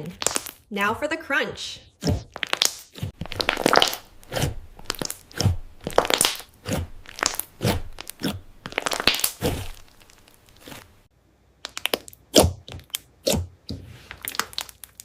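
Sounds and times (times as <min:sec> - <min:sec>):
crunchy slime squeezed: 0:02.0 - 0:11.0, 0:11.6 - 0:13.5, 0:14.2 - 0:15.0.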